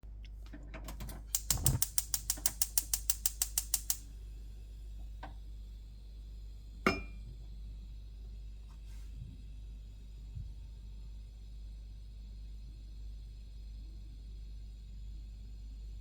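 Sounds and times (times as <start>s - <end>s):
gas stove igniter clicking: 0.9s - 4.1s.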